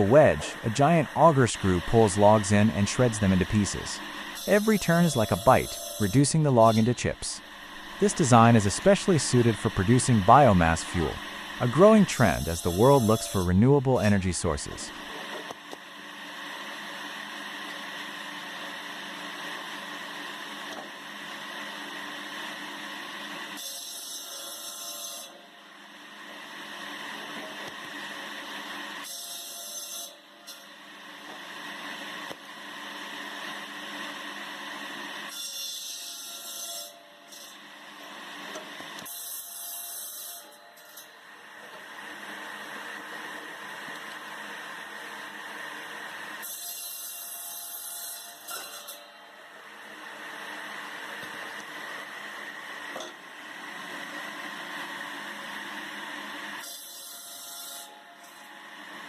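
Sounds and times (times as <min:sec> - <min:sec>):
wood-processing machine grinding wood: 0:00.0 - 0:15.4.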